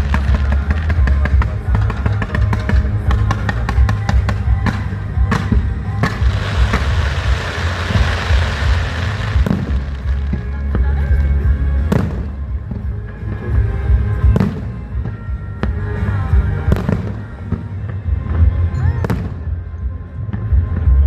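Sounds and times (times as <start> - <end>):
fireworks crackling and banging: 0.0 - 13.5
loud music with bass beat: 6.1 - 10.3.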